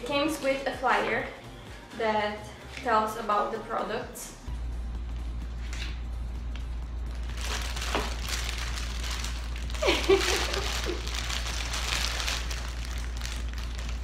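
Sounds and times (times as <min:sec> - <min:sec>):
steady low hum: 0:00.0 - 0:14.0
paper and plastic crinkling: 0:07.2 - 0:14.0.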